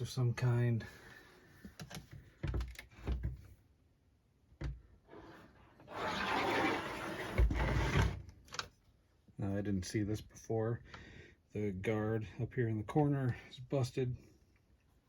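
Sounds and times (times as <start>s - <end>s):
plastic rubbing and scraping: 5.1s - 8.7s.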